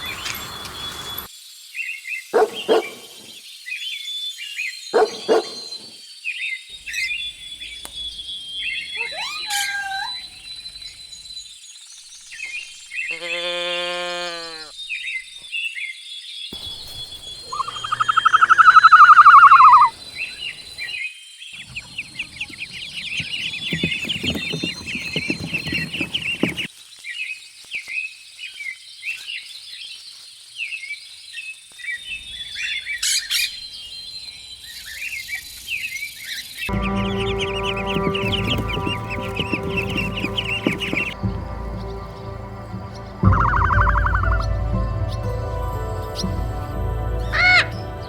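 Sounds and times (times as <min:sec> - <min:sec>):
birds calling and chirping: 0:00.0 - 0:01.3, 0:02.3 - 0:03.4, 0:04.5 - 0:13.2, 0:16.6 - 0:26.7, 0:31.8 - 0:48.0
drawn-out falling bird calls: 0:02.4 - 0:03.3, 0:05.0 - 0:05.9, 0:06.8 - 0:11.4, 0:16.6 - 0:21.0, 0:21.6 - 0:26.7, 0:36.7 - 0:46.4.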